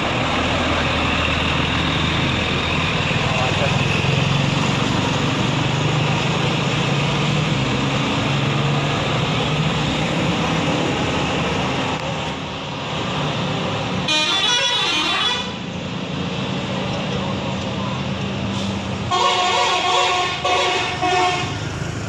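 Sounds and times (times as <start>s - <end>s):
bus engine running: 0.0s - 22.0s
road noise: 0.0s - 22.0s
multi-tone bus air horn tune: 14.0s - 15.6s, 19.1s - 21.6s.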